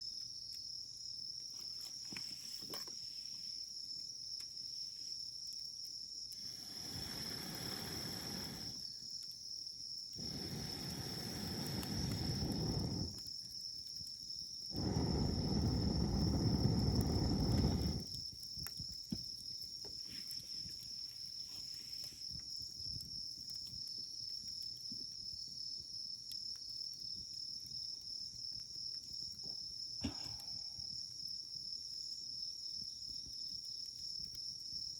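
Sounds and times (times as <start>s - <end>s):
campfire crackling: 3.5s - 34.9s
low rumbling noise: 10.2s - 13.2s, 14.8s - 18.1s.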